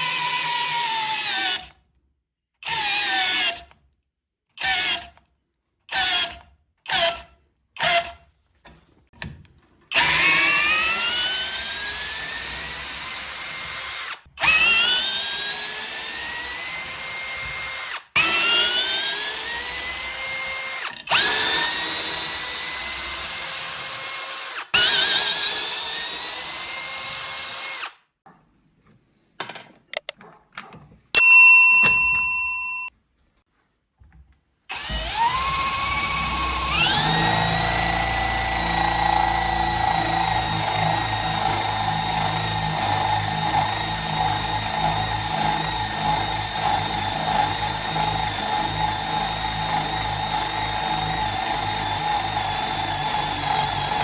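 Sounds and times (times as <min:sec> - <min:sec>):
cordless drill whirring: 0:09.9 - 0:28.0, 0:34.7 - 0:54.0
small clicks: 0:29.9 - 0:30.2.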